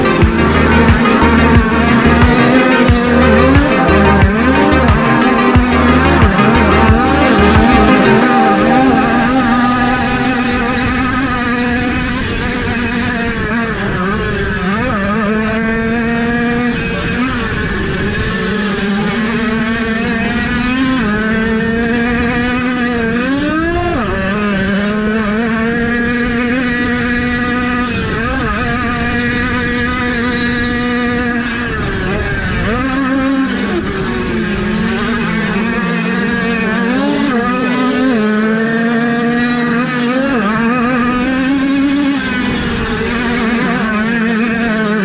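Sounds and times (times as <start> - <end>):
dirt bike engine revving: 0.0 - 13.8.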